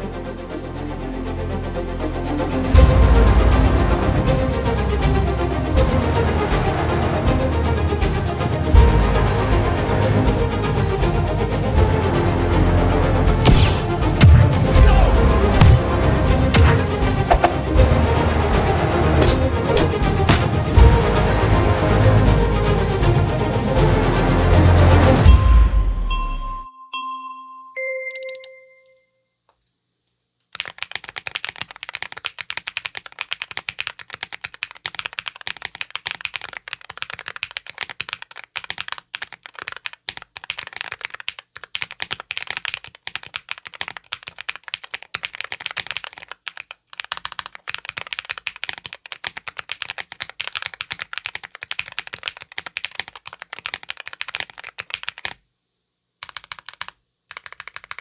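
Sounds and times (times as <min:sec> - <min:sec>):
fast mechanical keyboard typing: 0:30.5 - 0:55.4, 0:56.2 - 0:58.0.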